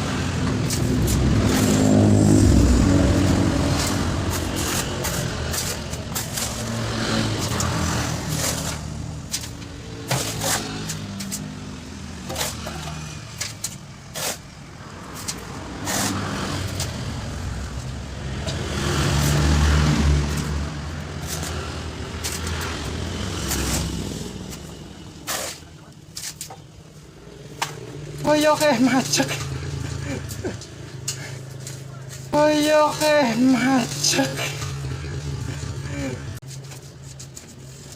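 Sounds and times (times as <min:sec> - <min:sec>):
vehicle engine revving: 0:00.0 - 0:13.4, 0:15.5 - 0:25.1
knocks clanks and scrapes: 0:03.7 - 0:11.6, 0:12.2 - 0:17.0, 0:21.1 - 0:27.9, 0:28.8 - 0:32.4, 0:33.0 - 0:37.9.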